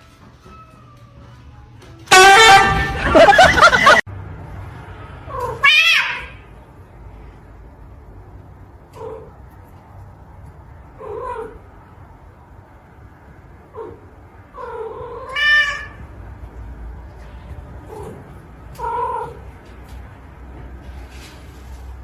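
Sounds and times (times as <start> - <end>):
cat meowing: 5.3 - 6.5, 13.8 - 16.0
cat yowling: 5.3 - 6.5, 11.0 - 11.6, 13.8 - 16.0, 18.8 - 19.4.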